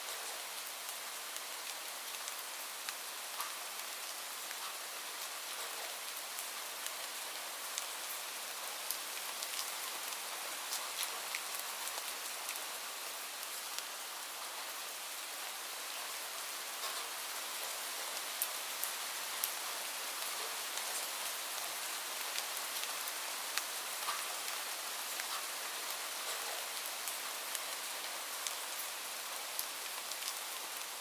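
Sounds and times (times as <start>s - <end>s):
light rain hiss: 0.0s - 31.0s
raindrop ticks: 2.9s - 3.6s, 16.8s - 17.0s, 23.5s - 24.6s, 25.2s - 25.6s.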